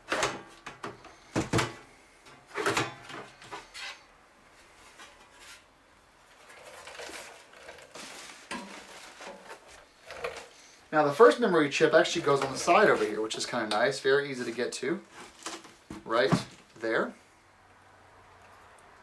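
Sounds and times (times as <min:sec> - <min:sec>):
plastic casing clacks and scrapes: 0:06.3 - 0:10.6.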